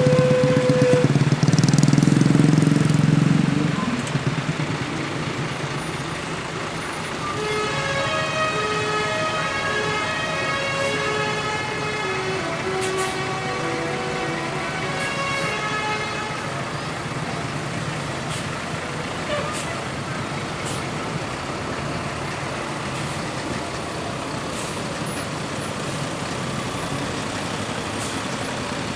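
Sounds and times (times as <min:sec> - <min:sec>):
musical bus horn playing a tune: 0:00.0 - 0:02.5, 0:07.0 - 0:18.4.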